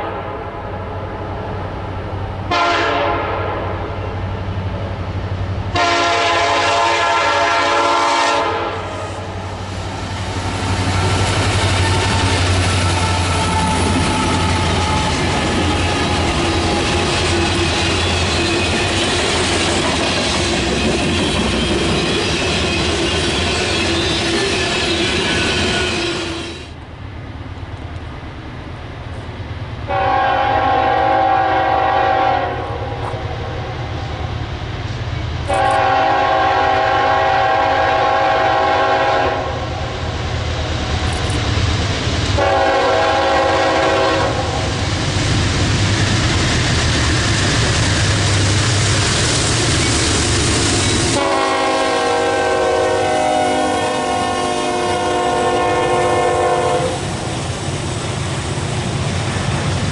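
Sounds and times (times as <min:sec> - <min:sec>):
diesel locomotive horn blasts: 0:00.0 - 0:00.6, 0:02.5 - 0:04.2, 0:05.7 - 0:17.1, 0:29.9 - 0:33.9, 0:35.5 - 0:40.0, 0:42.4 - 0:44.8, 0:51.1 - 0:57.1
freight train wheels on rails: 0:00.0 - 0:59.9.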